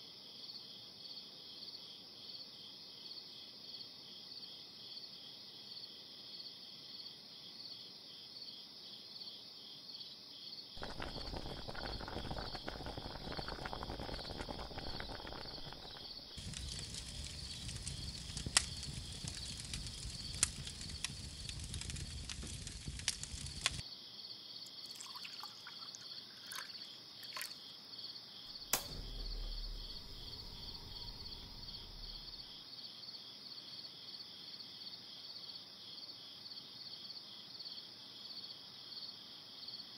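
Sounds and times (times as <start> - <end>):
insects chirring: 10.8 - 23.8, 24.6 - 32.4
sharp clicks: 28.7 - 32.3.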